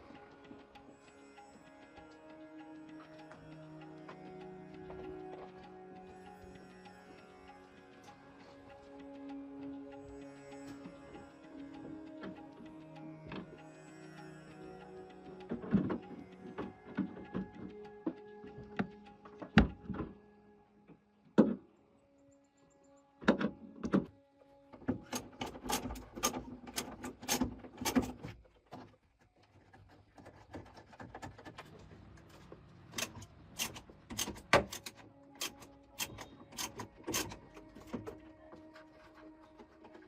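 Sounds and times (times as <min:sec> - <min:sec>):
quiet background music: 0:00.0 - 0:40.0
hand tools clicking and knocking: 0:24.8 - 0:40.0.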